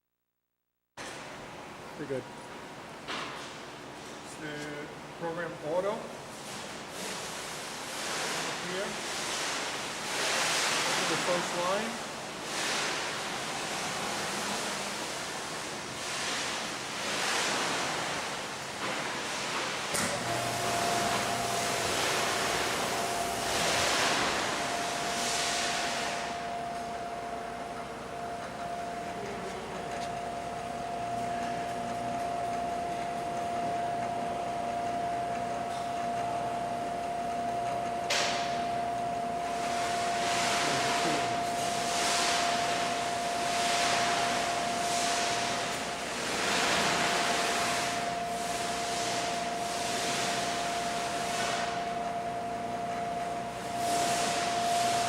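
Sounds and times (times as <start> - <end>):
milling machine whining: 20.0 - 55.0
milling machine rushing hiss: 20.1 - 28.1.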